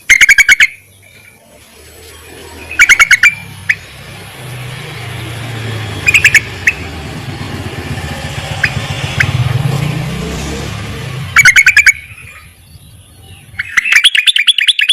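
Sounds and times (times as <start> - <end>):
bird calling in sharp notes: 0.0 - 1.4, 2.3 - 5.2, 5.8 - 10.1, 11.0 - 14.9
low rumble: 3.4 - 11.4.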